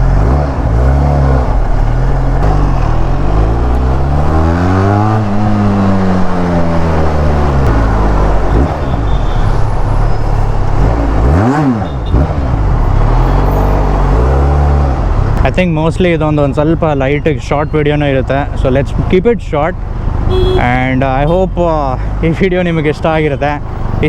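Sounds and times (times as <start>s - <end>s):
motorcycle engine revving: 0.0s - 15.5s.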